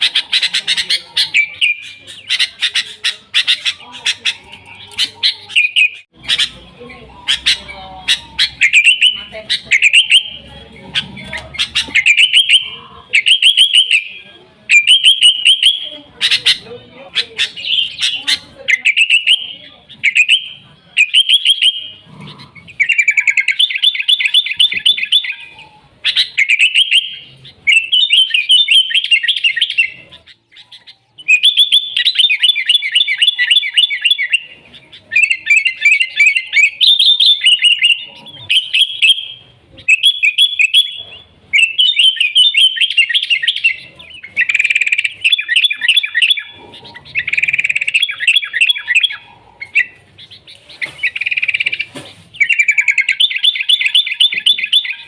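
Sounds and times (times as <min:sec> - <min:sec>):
bulbul singing: 0:00.0 - 0:55.0.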